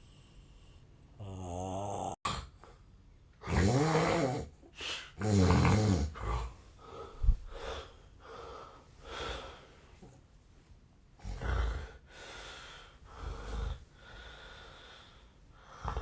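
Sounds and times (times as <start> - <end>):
quiet breathing: 0.0 - 1.2, 6.1 - 16.0
man snoring loudly: 1.2 - 2.5, 3.4 - 4.5, 5.2 - 6.5, 11.2 - 12.0.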